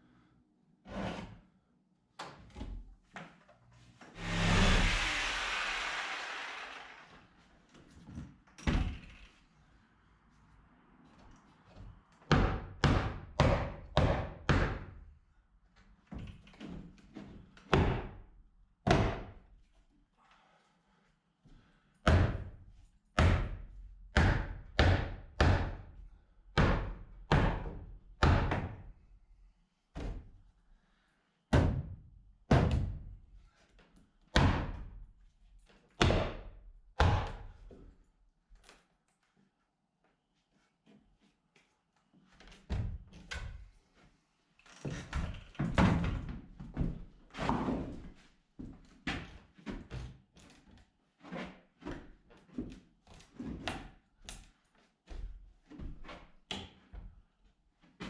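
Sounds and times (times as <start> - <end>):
hammer striking wooden boards: 24.2 - 25.8.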